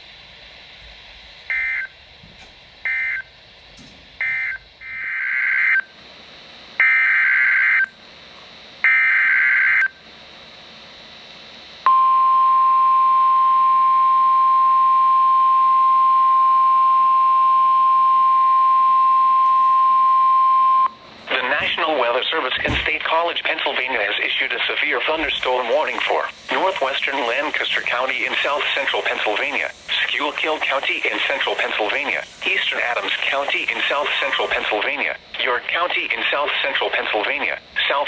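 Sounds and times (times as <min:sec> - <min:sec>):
digital data bursts: 0:24.9 - 0:38.0.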